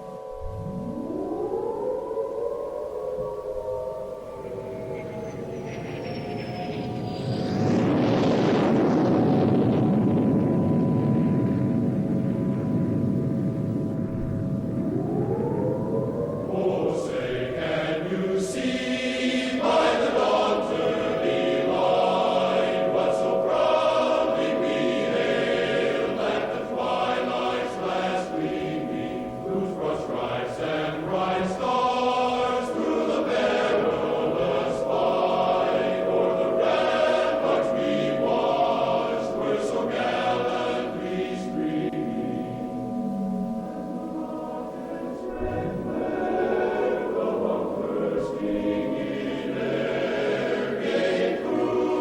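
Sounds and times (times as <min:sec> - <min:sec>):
choir singing: 0:16.2 - 0:52.0.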